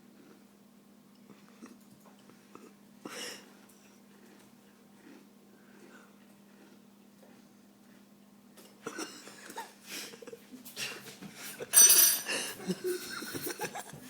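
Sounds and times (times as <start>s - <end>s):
person chewing cereal: 0.0s - 9.6s
spoon clinks: 11.8s - 12.3s.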